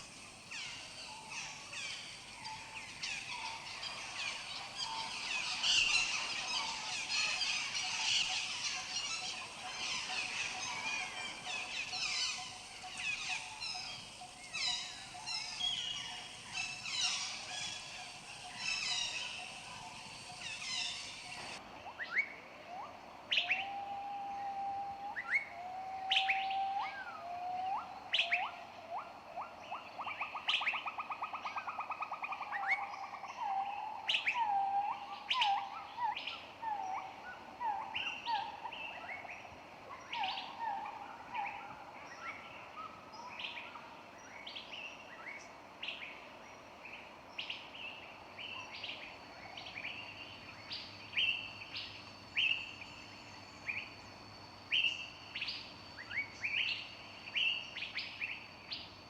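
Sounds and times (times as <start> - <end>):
birds chirping in chorus: 0.0 - 21.6.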